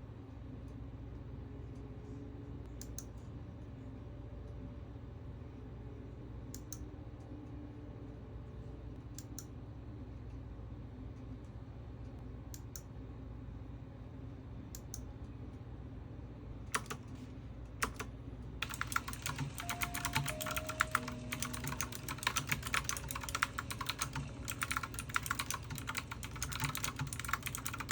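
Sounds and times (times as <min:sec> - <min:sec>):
keyboard typing clicks: 0:16.8 - 0:17.2, 0:17.8 - 0:27.9.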